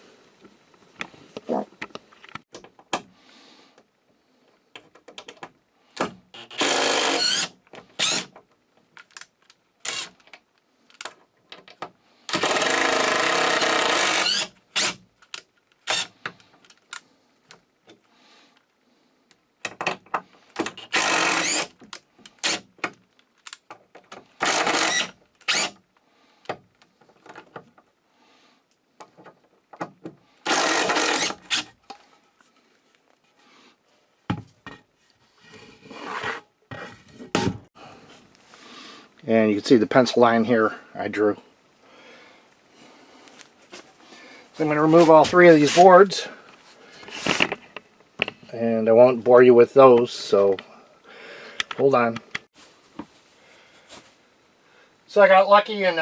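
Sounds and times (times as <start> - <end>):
impact driver driving screws: 6.0 - 8.3, 9.8 - 10.2, 12.3 - 15.0, 15.8 - 16.4, 20.6 - 22.7, 24.4 - 25.8, 30.4 - 31.8
tool and wood handling knocks: 34.3 - 34.8, 36.7 - 37.7.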